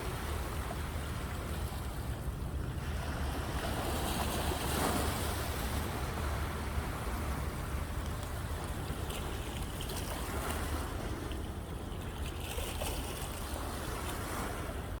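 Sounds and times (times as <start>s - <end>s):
sea waves washing in: 0.0s - 15.0s.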